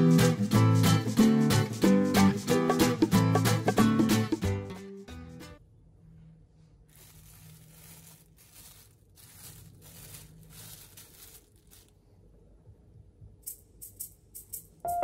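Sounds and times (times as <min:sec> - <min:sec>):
rustling and crinkling handling noise: 0:06.6 - 0:12.3.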